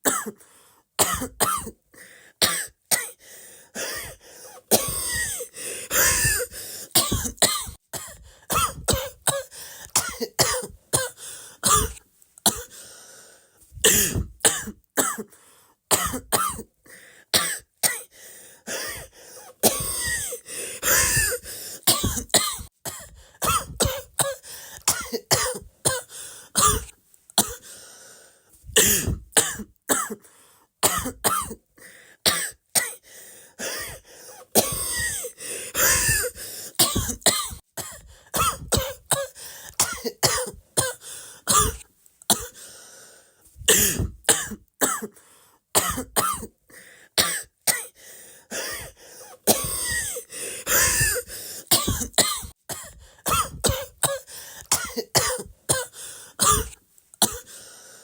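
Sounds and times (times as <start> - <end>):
person coughing: 0.0 - 0.4, 1.0 - 1.8, 3.8 - 12.8, 13.8 - 15.3, 15.9 - 16.7, 18.7 - 27.7, 28.8 - 30.2, 30.8 - 31.6, 33.6 - 42.6, 43.6 - 45.2, 45.8 - 46.6, 47.2 - 57.6.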